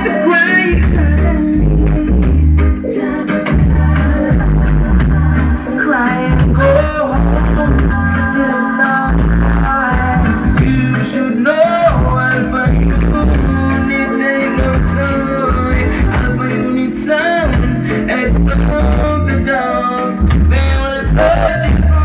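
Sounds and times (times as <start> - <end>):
song with singing over strong bass: 0.0 - 22.0.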